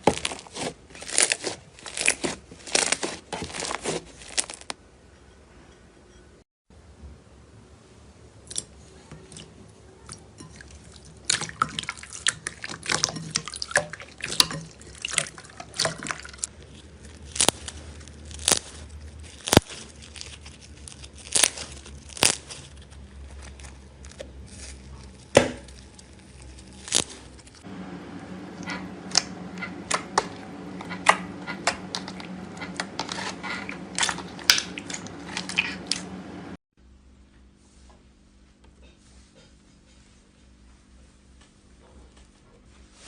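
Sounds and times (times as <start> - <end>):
slime squishing with wet pops: 10.9 - 27.6.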